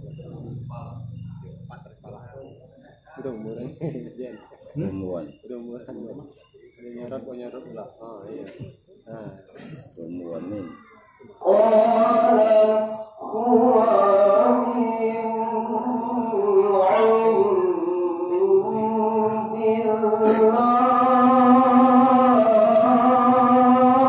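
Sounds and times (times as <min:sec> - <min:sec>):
person reciting melodically: 0:10.1 - 0:24.0.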